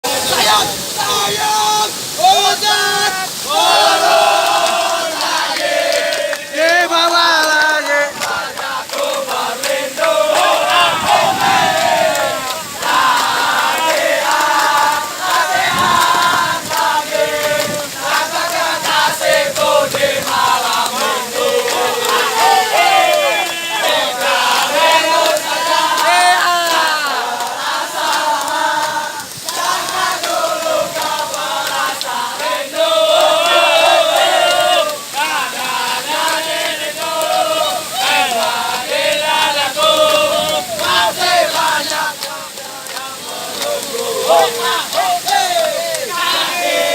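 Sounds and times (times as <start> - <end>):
group singing marching song: 3.4 - 46.9.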